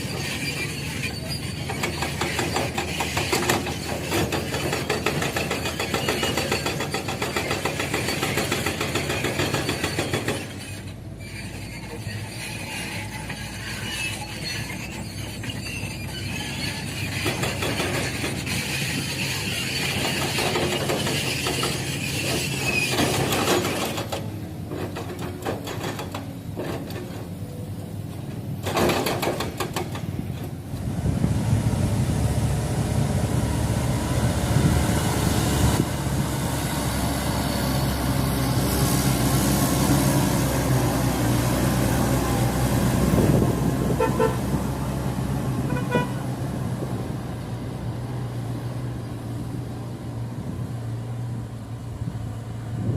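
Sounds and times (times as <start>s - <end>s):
heavy diesel engine running: 29.8s - 52.9s.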